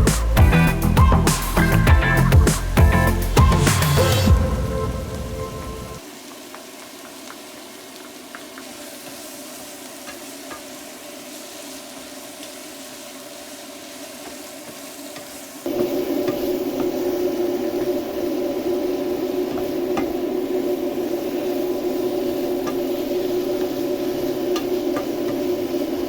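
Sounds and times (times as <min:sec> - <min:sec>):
food sizzling in a pan: 0:03.1 - 0:26.0
spatula tapping pan: 0:10.0 - 0:10.8.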